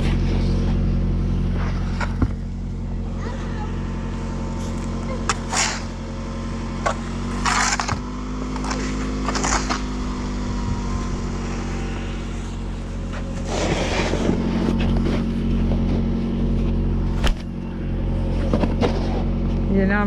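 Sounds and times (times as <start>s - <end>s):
engine running: 0.0s - 20.0s
snow shovels scraping: 1.4s - 2.5s, 3.2s - 6.1s, 6.7s - 16.7s, 18.2s - 19.3s.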